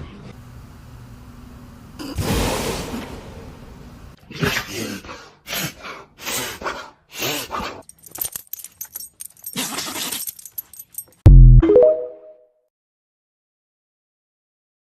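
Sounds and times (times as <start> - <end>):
rapid metallic jingling: 7.8 - 11.2.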